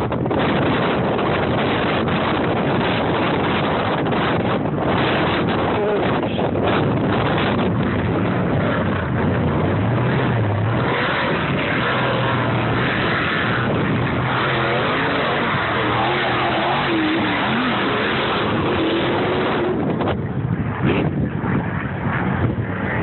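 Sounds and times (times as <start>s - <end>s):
off-road vehicle engine revving: 2.1s - 20.2s.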